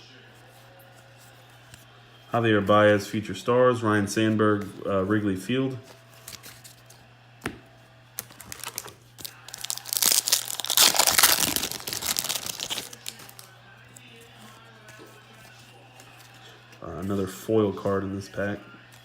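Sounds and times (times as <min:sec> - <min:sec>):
foil wrapper tearing and crinkling: 0:08.2 - 0:14.5.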